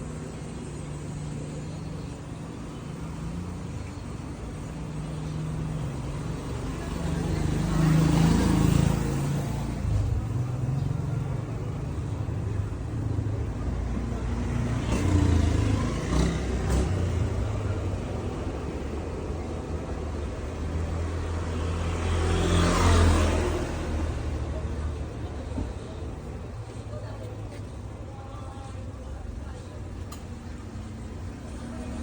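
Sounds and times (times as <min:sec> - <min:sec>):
vehicle engines on road: 0:00.0 - 0:32.0
vehicle passing: 0:04.8 - 0:27.9.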